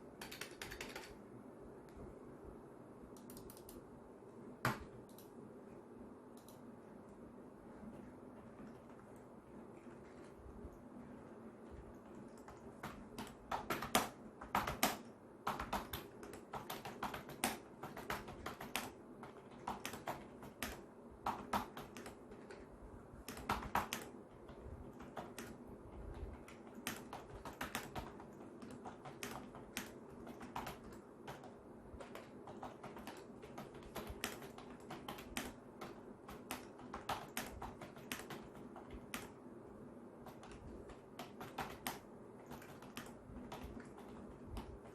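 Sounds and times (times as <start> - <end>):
soft keyboard keystroke clicks: 0.1 - 1.2, 3.1 - 3.9, 4.6 - 5.4, 6.3 - 7.2, 11.8 - 39.4, 40.2 - 44.9.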